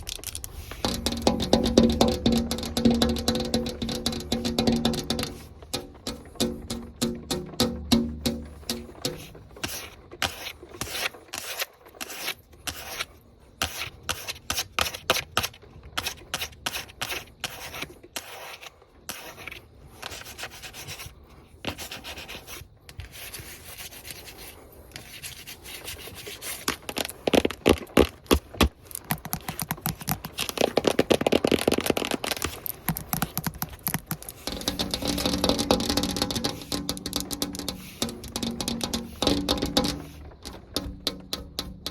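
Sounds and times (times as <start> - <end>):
fingernails scratching hard surface: 8.7 - 21.1.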